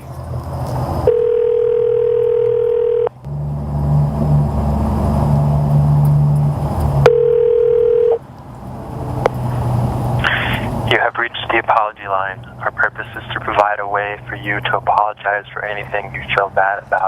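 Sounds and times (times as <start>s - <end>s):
low engine rumble: 0.0s - 17.0s
telephone ringback tone: 1.1s - 3.1s, 7.1s - 8.2s.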